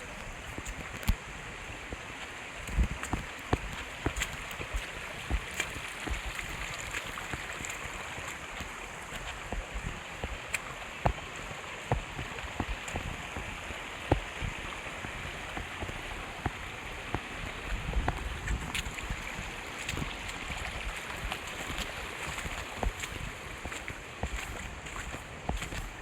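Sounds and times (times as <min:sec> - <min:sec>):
flowing water rushing: 0:00.0 - 0:26.0
low knocks and thumps: 0:09.4 - 0:19.2.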